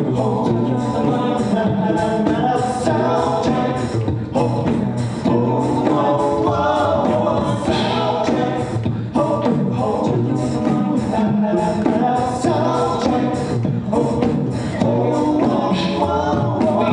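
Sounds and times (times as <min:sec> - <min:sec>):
beatboxing: 0:00.0 - 0:16.9
vocal group singing in harmony: 0:00.0 - 0:16.9.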